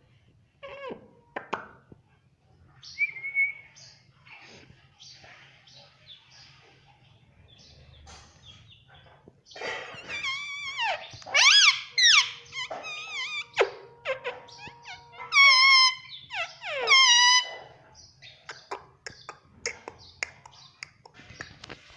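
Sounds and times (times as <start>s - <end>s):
parrot squawking: 9.6s - 17.7s
parrot chirps and clicks: 18.4s - 21.8s.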